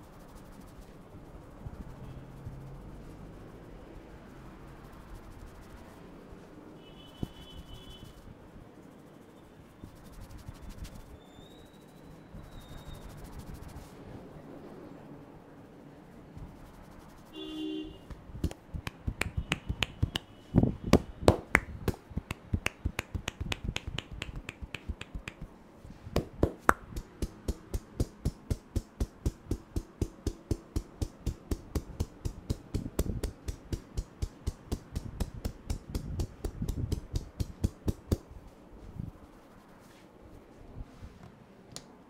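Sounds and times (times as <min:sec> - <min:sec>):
hands tapping on head: 0:18.1 - 0:20.3, 0:20.9 - 0:25.5, 0:26.1 - 0:38.3.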